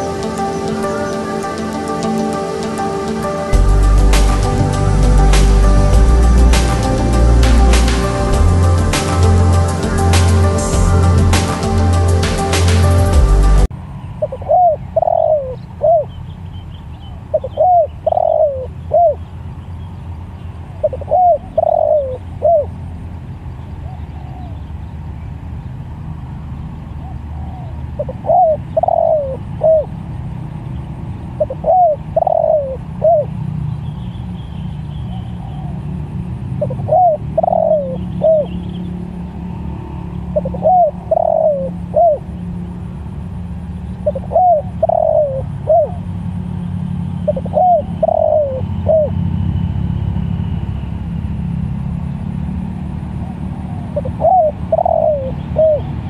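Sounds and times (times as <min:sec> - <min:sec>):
steady low rumble: 0:00.0 - 0:14.0
dove cooing: 0:14.2 - 0:16.1, 0:17.3 - 0:19.2, 0:20.8 - 0:22.8, 0:27.0 - 0:30.0, 0:31.4 - 0:33.4, 0:36.6 - 0:38.6, 0:40.4 - 0:42.3, 0:44.0 - 0:46.1, 0:47.2 - 0:49.2, 0:53.2 - 0:56.0.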